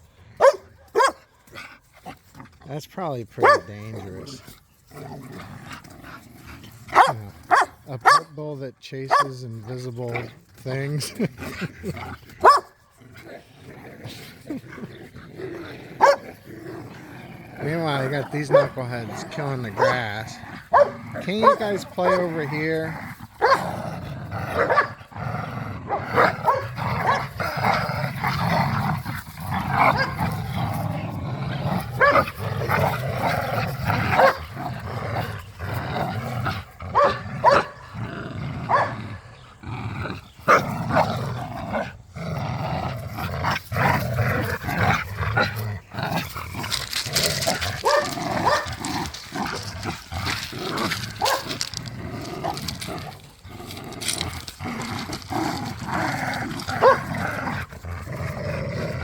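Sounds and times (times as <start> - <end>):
dogs growling and snarling: 0.0 - 59.0
dogs barking: 0.4 - 1.4, 3.4 - 4.1, 6.9 - 8.3, 9.1 - 9.4, 12.4 - 12.8, 16.0 - 16.2, 17.6 - 23.7, 24.5 - 25.0, 25.8 - 27.8, 29.8 - 30.4, 31.9 - 32.9, 34.0 - 34.6, 36.9 - 37.9, 38.7 - 39.0, 47.4 - 49.7, 51.0 - 52.7, 56.8 - 57.1.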